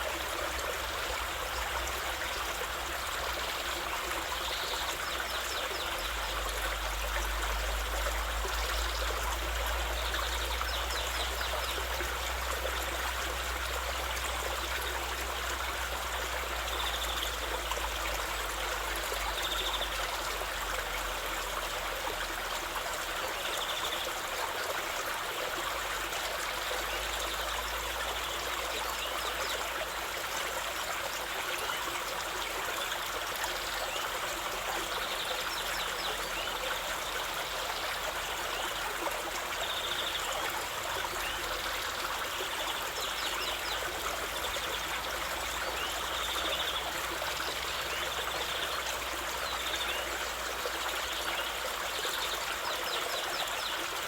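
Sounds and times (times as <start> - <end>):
water stream trickling and splashing: 0.0 - 54.0.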